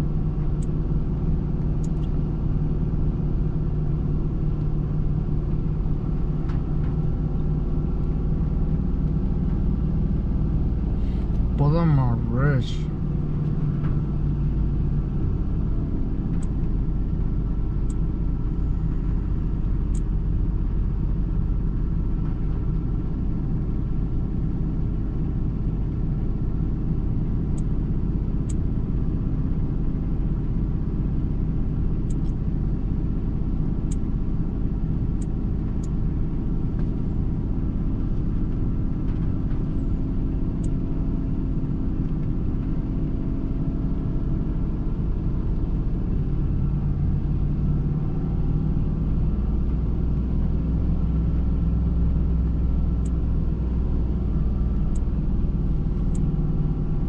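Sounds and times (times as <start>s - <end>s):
car engine idling: 0.2s - 25.0s.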